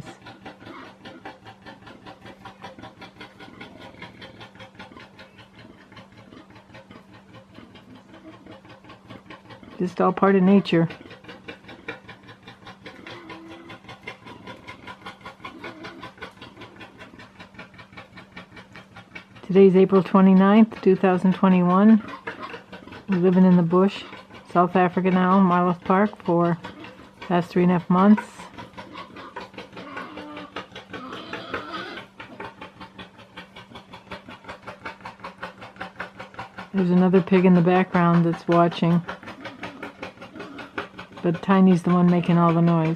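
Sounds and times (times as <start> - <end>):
warthog chugging grunts: 0.0 - 42.9.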